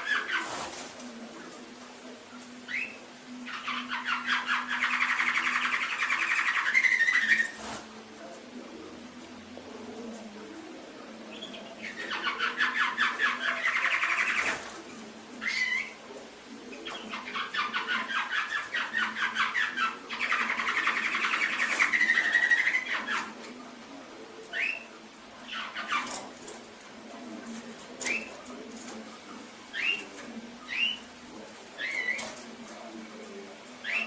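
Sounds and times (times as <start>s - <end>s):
canary singing trills: 2.4s - 7.8s, 11.2s - 14.7s, 15.4s - 16.0s, 16.7s - 23.4s, 24.5s - 26.2s, 28.0s - 28.4s, 29.6s - 31.2s, 31.8s - 32.4s, 33.8s - 34.0s.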